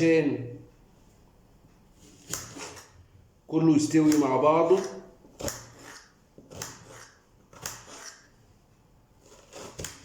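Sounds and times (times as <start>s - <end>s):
knife chopping onion: 2.0s - 8.4s, 9.2s - 10.0s.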